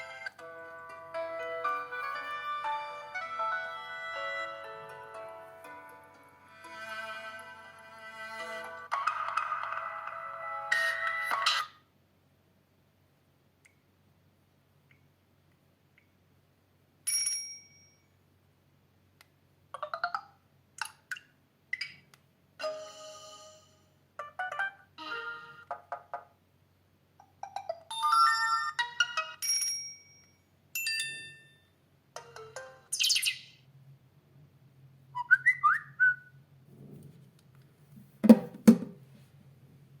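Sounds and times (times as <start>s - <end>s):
sharp knock: 38.2s - 39.0s.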